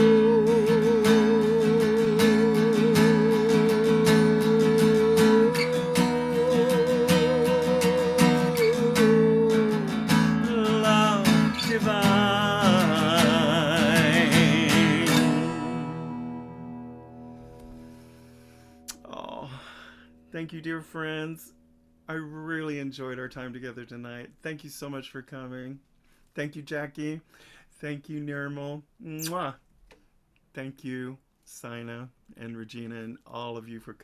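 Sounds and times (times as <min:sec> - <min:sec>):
second wavering vocal line: 0:00.0 - 0:15.7
person singing wavering notes: 0:00.0 - 0:16.4
acoustic guitar strummed: 0:00.0 - 0:19.1.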